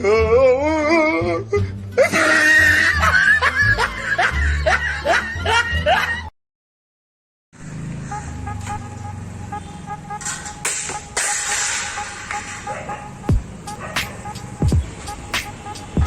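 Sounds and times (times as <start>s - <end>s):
music with heavy bass beat: 10.2s - 16.0s.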